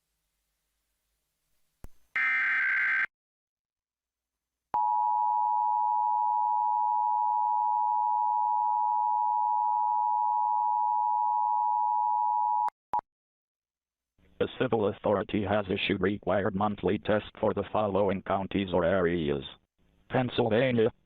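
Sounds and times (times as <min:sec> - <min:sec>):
two-tone alert alarm: 0:02.2 - 0:03.1.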